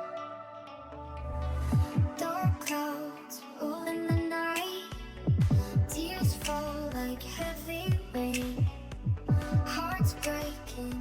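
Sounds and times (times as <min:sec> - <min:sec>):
upbeat music with kick drum: 0:01.7 - 0:02.8, 0:04.1 - 0:11.0.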